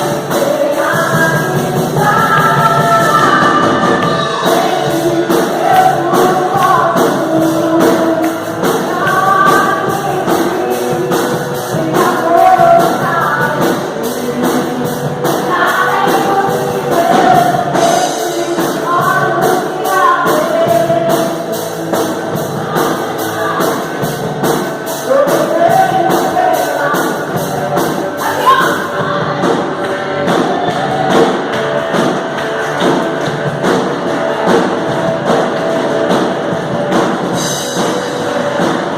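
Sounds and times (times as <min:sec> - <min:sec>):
person singing: 0:00.0 - 0:24.2, 0:24.9 - 0:31.5
drums: 0:00.0 - 0:38.9
worship band playing: 0:00.0 - 0:38.9.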